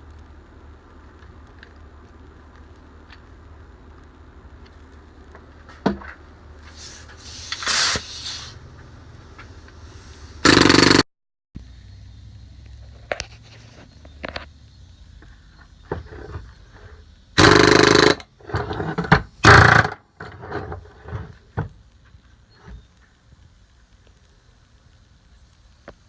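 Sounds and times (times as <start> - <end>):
short hiss of air: 6.6 - 10.5
pneumatic air hammer firing: 6.7 - 8.6, 10.4 - 11.0, 17.4 - 20.6.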